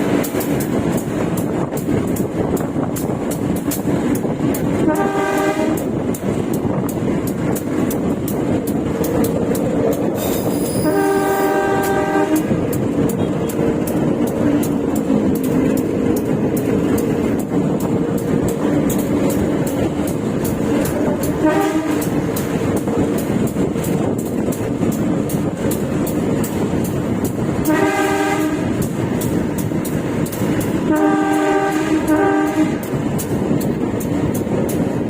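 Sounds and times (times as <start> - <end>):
rail clicking: 0.0 - 35.0
train carriage rumbling on rails: 0.0 - 35.0
train horn blasts: 4.8 - 6.0, 10.5 - 13.6, 21.0 - 22.2, 27.6 - 28.9, 30.8 - 32.9.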